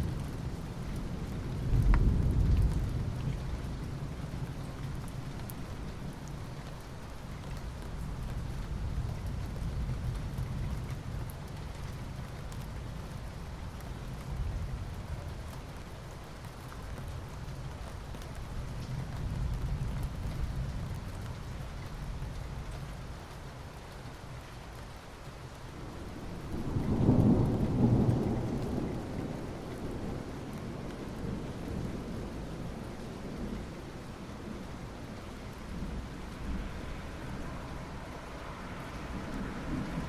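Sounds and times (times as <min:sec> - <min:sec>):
rain on asphalt: 0:00.0 - 0:40.0.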